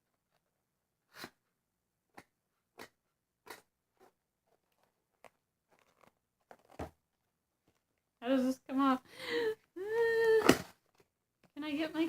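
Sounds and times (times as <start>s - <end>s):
cardboard and plastic crackling: 4.5s - 7.0s.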